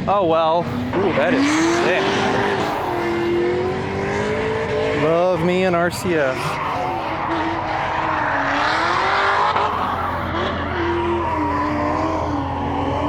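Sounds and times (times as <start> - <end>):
engines droning: 0.0 - 13.0
tires squealing: 0.0 - 13.0.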